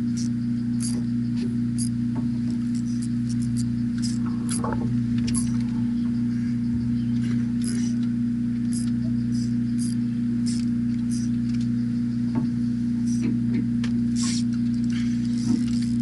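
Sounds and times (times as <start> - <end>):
engine humming steadily: 0.0 - 16.0.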